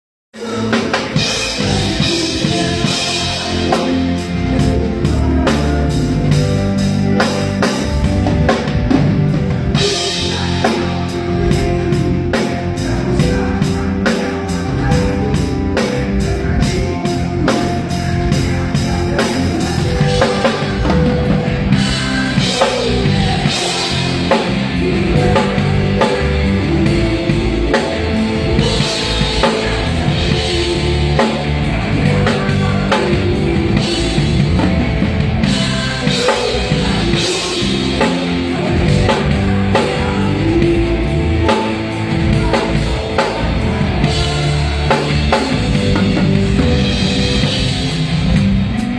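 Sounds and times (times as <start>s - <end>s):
drum kit: 0.4s - 48.9s
rock band playing: 0.4s - 48.9s.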